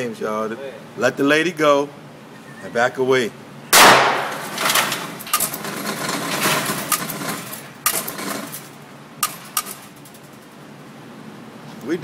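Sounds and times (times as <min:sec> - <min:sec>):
gunfire cracks: 0:03.8 - 0:04.6.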